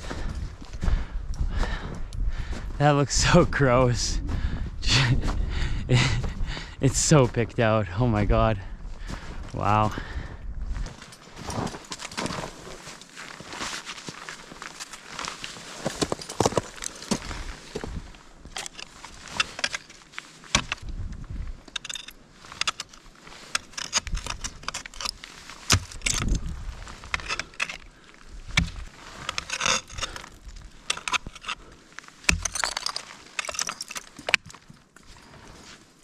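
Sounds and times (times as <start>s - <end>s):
metal climbing gear clinking: 10.9s - 35.8s
footsteps: 28.5s - 31.6s.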